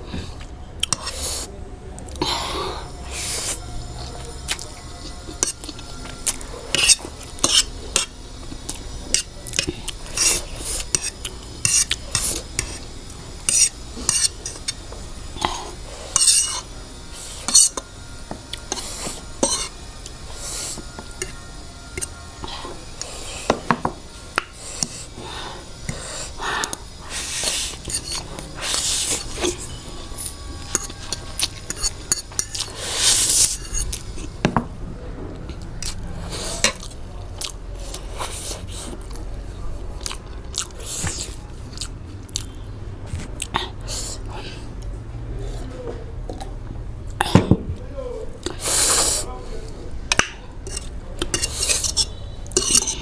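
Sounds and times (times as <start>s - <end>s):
utensils clinking on a plate: 4.0s - 34.8s, 50.1s - 53.0s.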